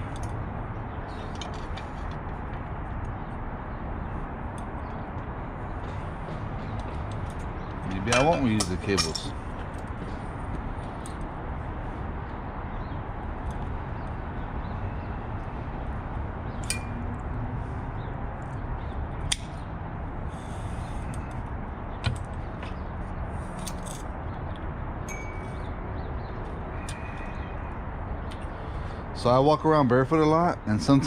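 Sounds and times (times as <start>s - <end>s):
metallic clicks of tools: 8.1s - 9.3s
faint pings: 25.1s - 25.7s.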